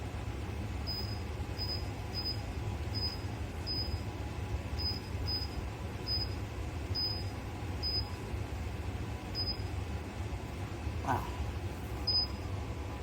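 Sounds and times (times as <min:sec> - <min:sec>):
fan heaters whooshing: 0:00.0 - 0:13.0.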